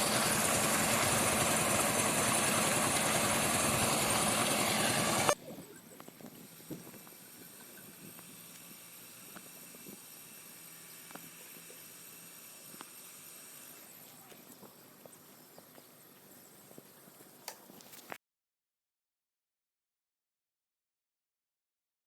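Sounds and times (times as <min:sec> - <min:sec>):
machine engine running loudly: 0:00.0 - 0:05.4.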